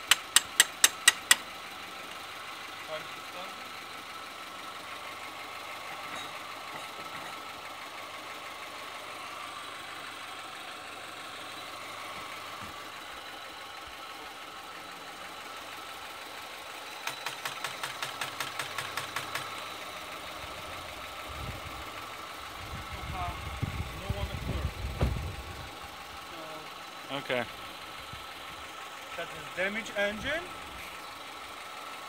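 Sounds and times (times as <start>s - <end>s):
rapid clicks of car failing to start: 0.0s - 1.5s, 17.0s - 19.7s
engine running: 0.0s - 32.0s.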